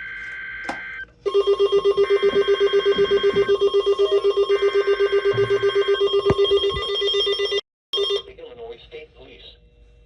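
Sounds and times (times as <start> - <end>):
rapid pulsing alert tone: 2.1 - 7.6.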